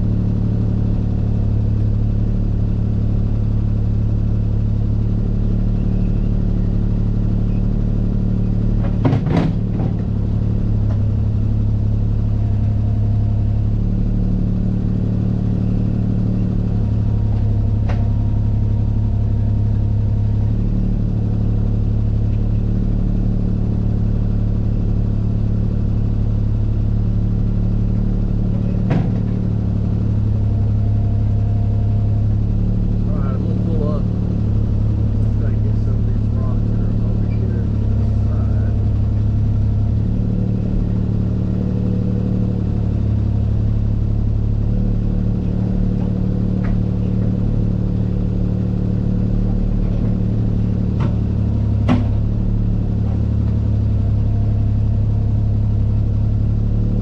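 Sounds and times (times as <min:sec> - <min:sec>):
skid-steer loader engine running: 0:00.0 - 0:57.0
sharp knocks: 0:51.8 - 0:52.2.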